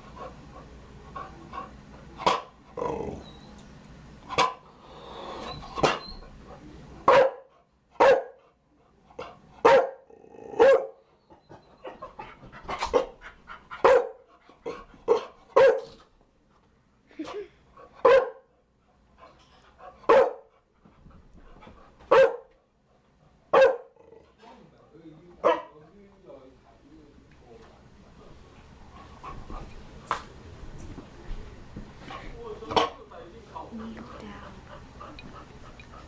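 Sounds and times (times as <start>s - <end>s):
dog barking sharply: 4.4s - 4.6s, 7.1s - 8.4s, 9.6s - 10.0s, 10.6s - 11.0s, 13.8s - 14.2s, 15.6s - 16.0s, 18.0s - 18.4s, 20.1s - 20.5s, 22.1s - 22.5s, 23.5s - 23.9s, 25.4s - 25.7s.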